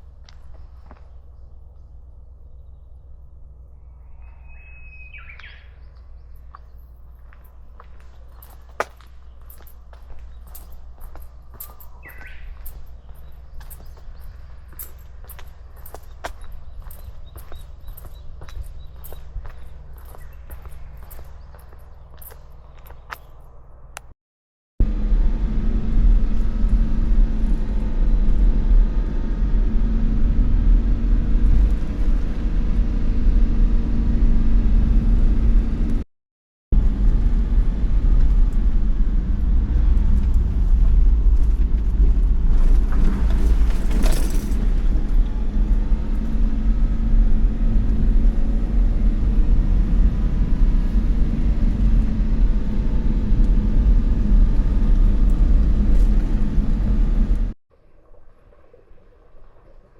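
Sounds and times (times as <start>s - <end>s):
loud low rumble: 24.8s - 36.0s, 36.7s - 57.6s.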